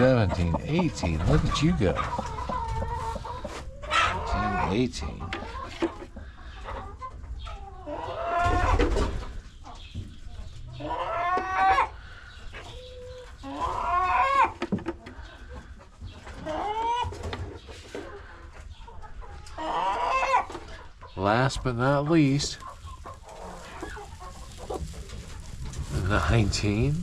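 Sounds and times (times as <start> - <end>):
hens squawking: 0.0 - 5.7, 19.5 - 27.0.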